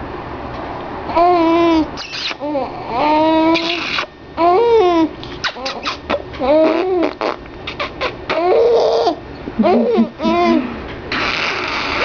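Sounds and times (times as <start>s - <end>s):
baby laughing: 1.3s - 12.0s
woman making silly vocal noises: 9.6s - 10.8s.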